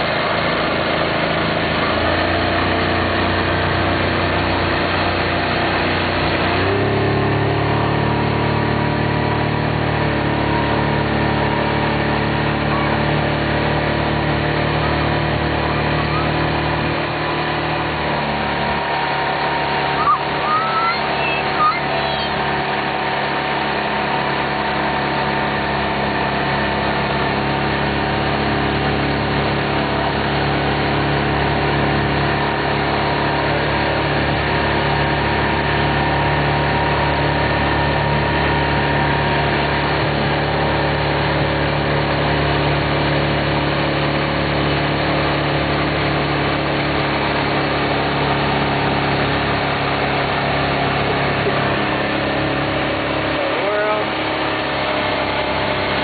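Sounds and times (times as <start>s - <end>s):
boat engine running: 0.0s - 56.0s
high rising squeaks: 18.8s - 22.6s.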